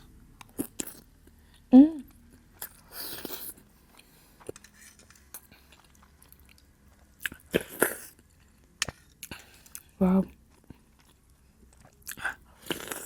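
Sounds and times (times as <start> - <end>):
chewing food: 5.2 - 13.0.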